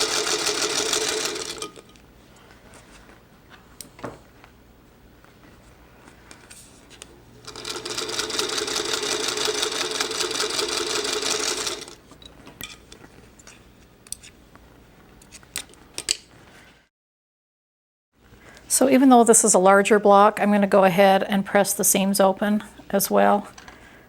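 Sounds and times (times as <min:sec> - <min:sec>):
sewing machine stitching: 0:00.0 - 0:01.8, 0:07.4 - 0:12.0.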